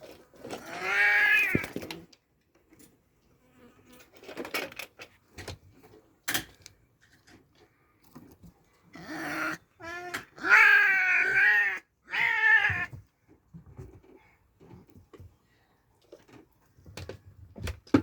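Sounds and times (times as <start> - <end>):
soft taps and scuffs of kittens playing: 12.6 - 18.0.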